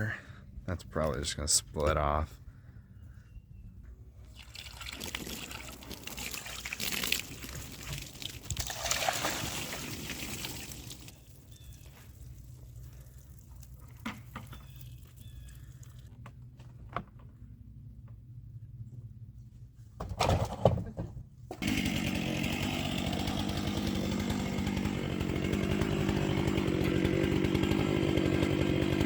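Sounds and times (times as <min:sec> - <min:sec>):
water splashing on wood: 0:04.3 - 0:16.1.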